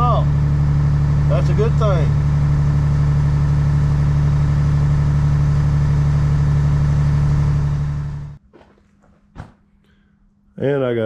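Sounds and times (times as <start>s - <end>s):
tractor diesel engine running: 0.0s - 8.4s.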